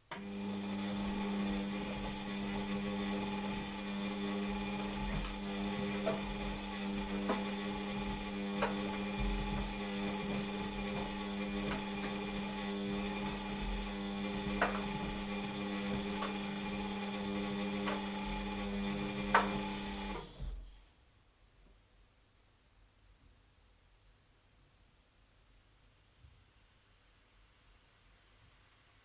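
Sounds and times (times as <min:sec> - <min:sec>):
washing machine motor humming: 0:00.1 - 0:20.7.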